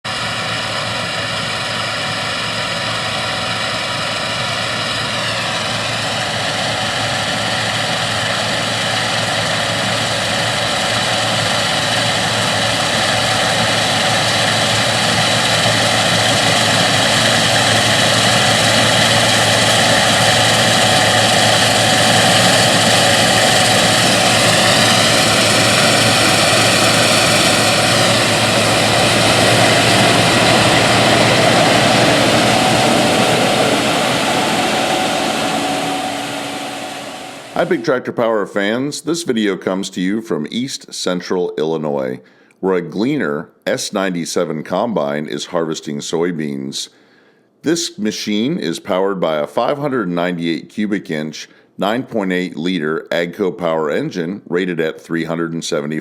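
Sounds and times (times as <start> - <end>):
combine harvester mechanical drone: 0.1 - 38.0
high whining tones: 12.0 - 38.0.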